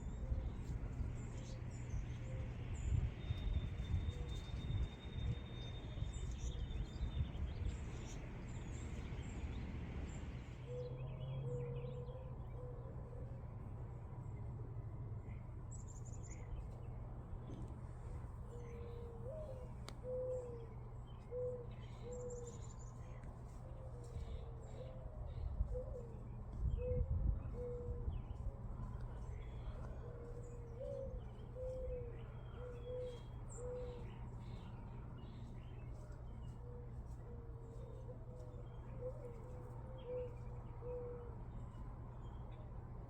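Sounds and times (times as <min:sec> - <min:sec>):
low background rumble: 0:12.3 - 0:43.0
repeated lower bird calls: 0:18.4 - 0:42.8.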